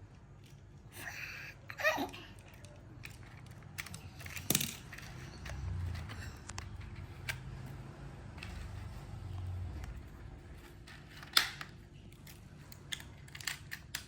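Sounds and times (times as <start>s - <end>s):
plastic toy track clicking: 10.8s - 14.0s.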